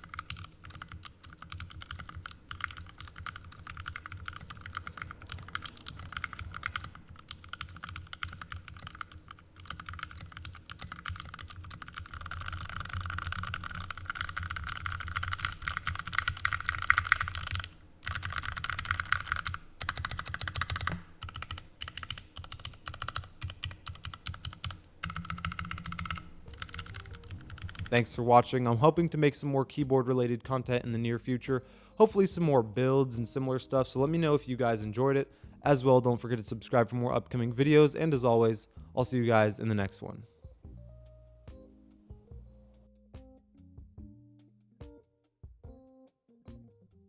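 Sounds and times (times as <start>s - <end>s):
mechanical keyboard typing: 0.0s - 28.3s.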